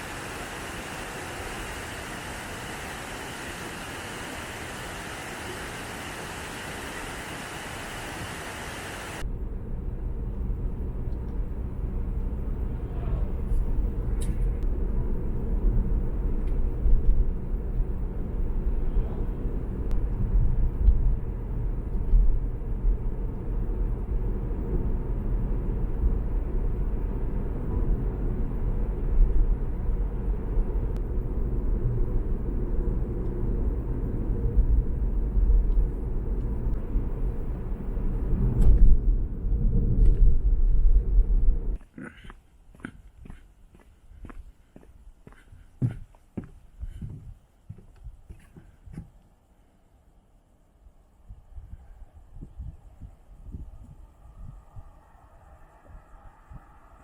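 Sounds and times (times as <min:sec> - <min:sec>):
low rumble: 0:09.2 - 0:41.8, 0:51.1 - 0:57.0.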